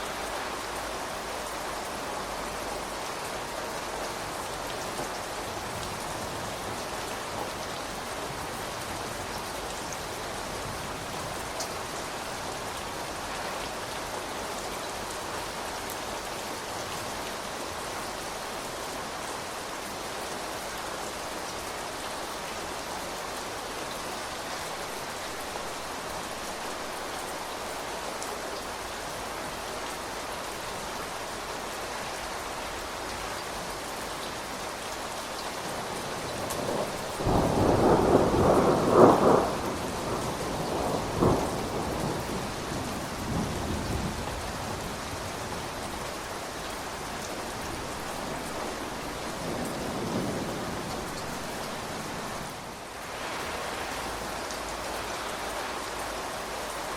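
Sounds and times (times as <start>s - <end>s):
steady rain falling: 0.0s - 56.9s
thunder cracking and rumbling: 36.2s - 45.4s.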